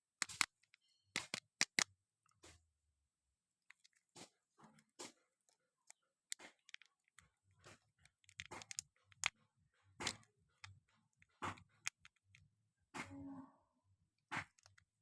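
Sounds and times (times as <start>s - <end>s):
chewing and crunching candy: 3.8s - 12.5s.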